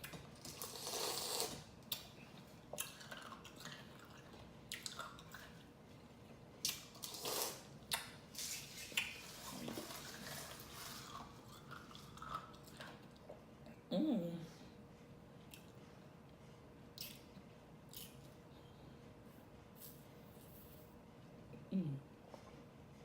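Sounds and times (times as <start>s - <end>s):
crushed ice being eaten: 0.4s - 1.7s, 6.7s - 7.7s.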